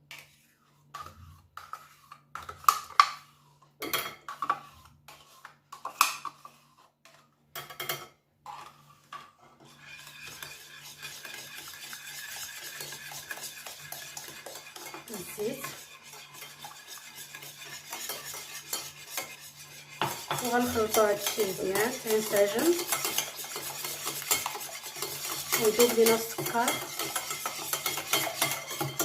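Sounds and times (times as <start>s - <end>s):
batter stirring: 0.0s - 29.0s
utensil clinking against bowl: 11.1s - 19.4s, 20.0s - 29.0s.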